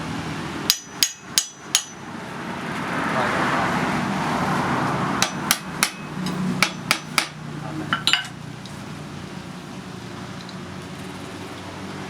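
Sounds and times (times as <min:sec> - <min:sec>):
hammer striking steel: 0:00.7 - 0:02.1, 0:05.2 - 0:08.4.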